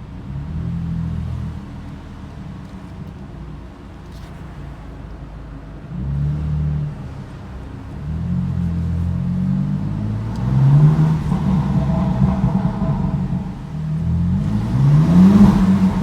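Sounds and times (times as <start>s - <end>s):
car engine revving: 5.9s - 16.0s.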